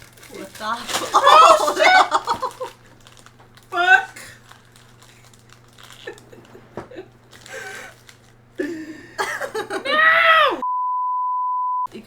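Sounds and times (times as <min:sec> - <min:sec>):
snack packaging crinkling: 0:00.0 - 0:09.8
small clicks and rustles: 0:04.4 - 0:06.6.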